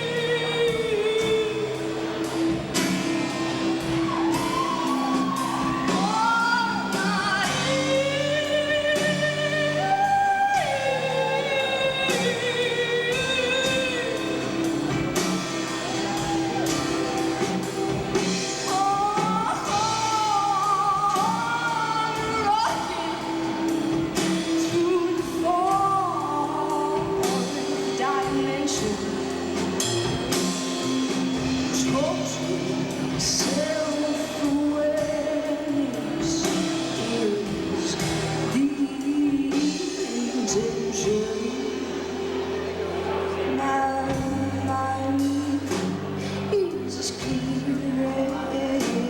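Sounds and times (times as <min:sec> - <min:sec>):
person singing: 0:00.0 - 0:29.8, 0:31.6 - 0:49.0
drums: 0:00.0 - 0:49.0
guitar: 0:00.0 - 0:49.0
live rock band: 0:00.0 - 0:49.0.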